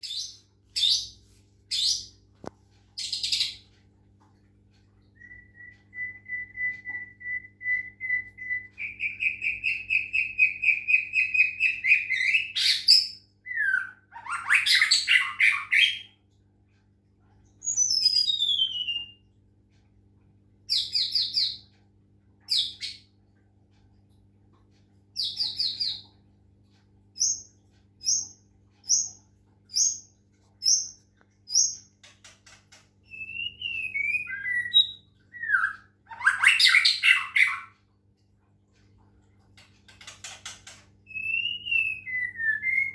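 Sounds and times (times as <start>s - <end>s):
faint low hum: 0.0s - 42.9s
songbird singing: 5.2s - 16.1s, 33.0s - 37.8s, 41.1s - 42.9s.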